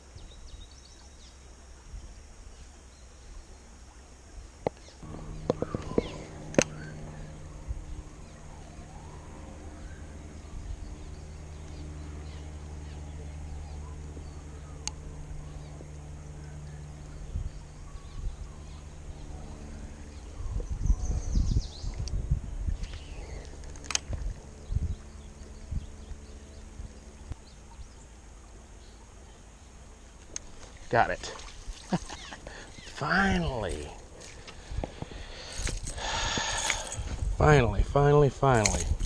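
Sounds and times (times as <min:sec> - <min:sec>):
low mechanical hum: 0:00.0 - 0:39.0
sharp clicks: 0:04.6 - 0:06.8.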